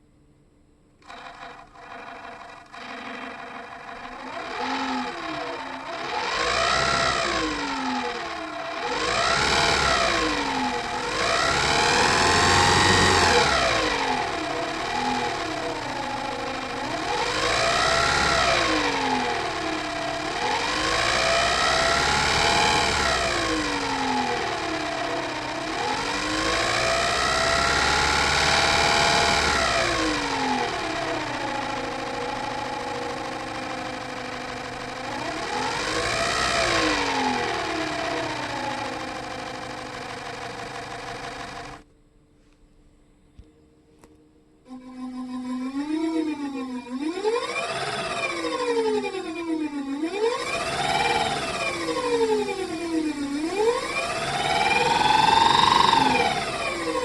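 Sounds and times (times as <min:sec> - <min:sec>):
hand-spun fan buzzing: 0:01.0 - 0:42.5, 0:43.4 - 0:57.0.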